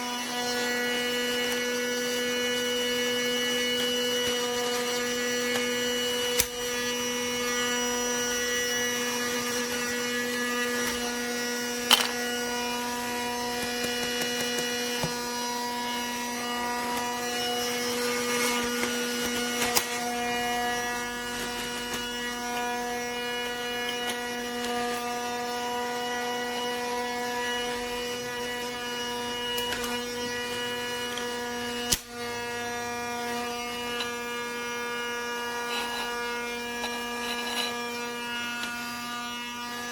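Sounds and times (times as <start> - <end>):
toy vacuum motor humming: 0.0 - 39.9.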